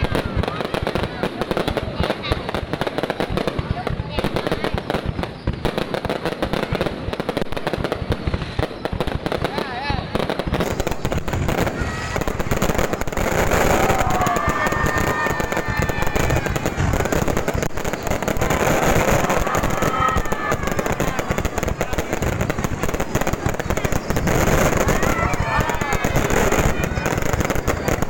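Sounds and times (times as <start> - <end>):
fireworks crackling and popping: 0.0 - 28.0.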